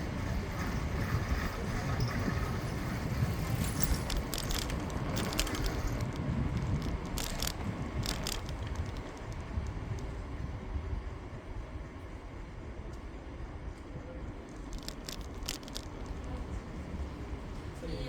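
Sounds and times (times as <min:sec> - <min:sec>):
bicycle tyres rumbling: 0:00.0 - 0:10.8, 0:14.5 - 0:17.6
wind on microphone: 0:00.0 - 0:11.2
sharp clicks: 0:03.8 - 0:10.1, 0:14.8 - 0:16.3.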